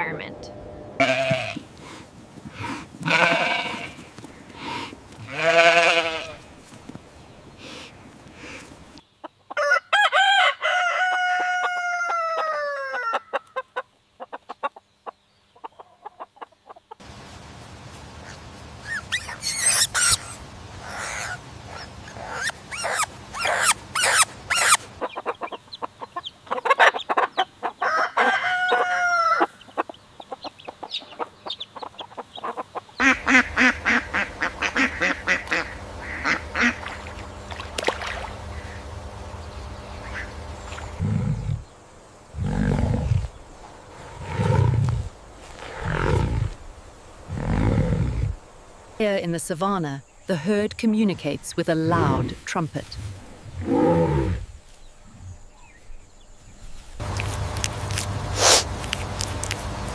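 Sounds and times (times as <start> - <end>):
fowl clucking and honking: 9.3 - 14.8, 22.2 - 39.1
rooster crowing: 9.6 - 13.4, 27.8 - 29.6.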